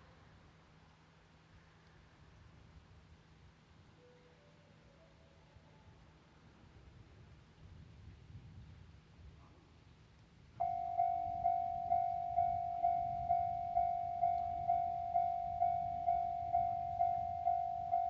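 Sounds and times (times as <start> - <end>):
railroad crossing bell ringing: 10.6 - 18.0.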